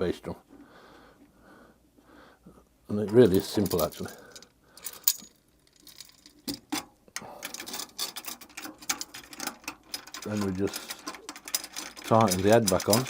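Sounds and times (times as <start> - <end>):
metallic ticking and clicking: 5.9 - 13.0.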